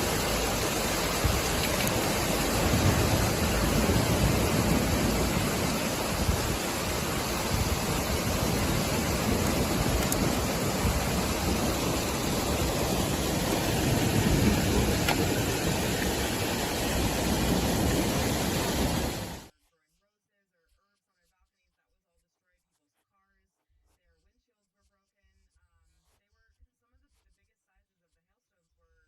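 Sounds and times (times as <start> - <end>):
heavy rain downpour: 0.0 - 19.5.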